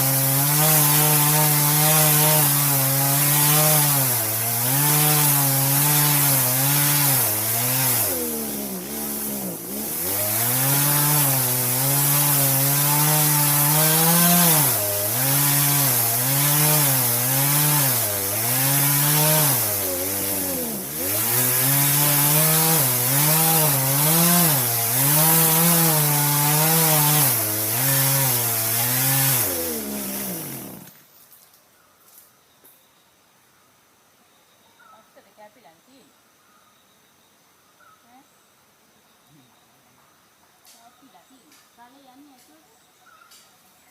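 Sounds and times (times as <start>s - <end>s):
chainsaw cutting tree: 0.0s - 31.0s.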